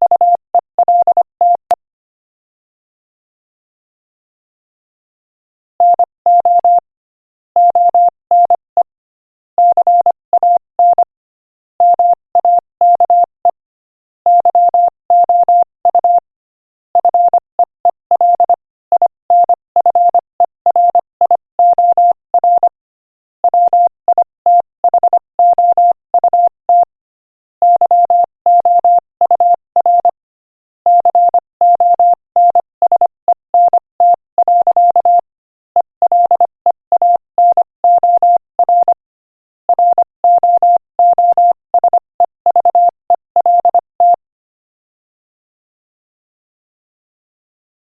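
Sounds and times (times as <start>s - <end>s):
morse code beeps: 0.1s - 1.7s, 5.8s - 6.8s, 7.6s - 8.6s, 9.6s - 11.0s, 14.3s - 16.2s, 17.0s - 22.8s, 23.5s - 26.9s, 27.6s - 30.2s, 30.9s - 39.0s, 39.7s - 44.2s.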